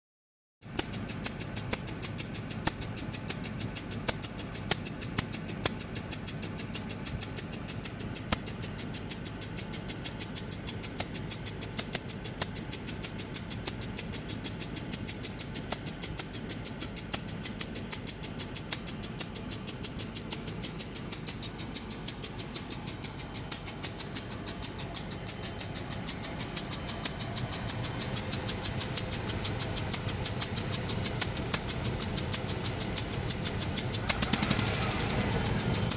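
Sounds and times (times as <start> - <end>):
car engine running: 0.6 - 35.9
rapid even clicking: 0.6 - 35.9.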